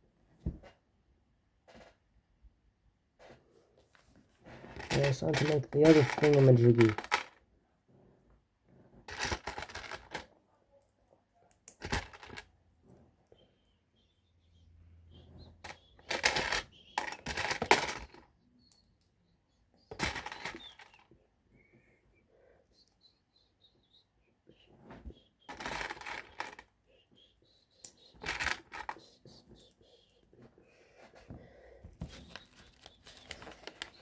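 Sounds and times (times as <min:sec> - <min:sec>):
plastic pieces clattering: 0:04.7 - 0:07.4, 0:09.1 - 0:10.3, 0:11.7 - 0:12.5, 0:16.0 - 0:18.2, 0:19.9 - 0:21.0, 0:25.5 - 0:26.6, 0:28.2 - 0:28.9.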